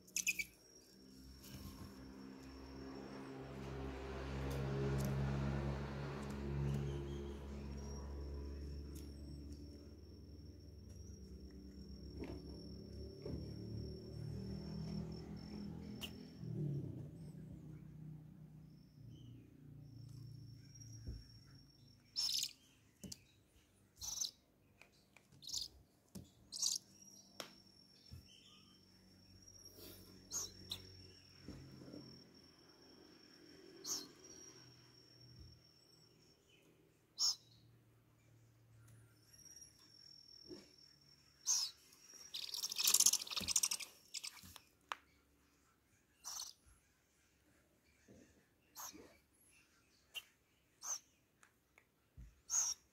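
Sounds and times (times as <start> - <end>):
cricket chirping: 0.0 - 23.1, 24.0 - 24.5, 25.4 - 25.7, 26.4 - 44.6, 46.2 - 46.6
baby owls begging calls: 0.2 - 0.5, 22.1 - 22.6, 24.0 - 24.4, 25.4 - 25.7, 26.5 - 26.9, 33.6 - 34.6, 37.2 - 37.5, 41.4 - 44.4, 46.2 - 46.6, 50.8 - 51.1, 52.5 - 52.9.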